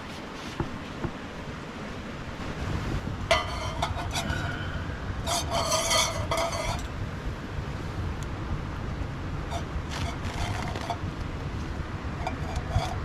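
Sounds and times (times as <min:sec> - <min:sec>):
steady low rumble: 0:00.7 - 0:13.0
metal cookware clanking and scraping: 0:03.3 - 0:06.9, 0:12.2 - 0:13.0.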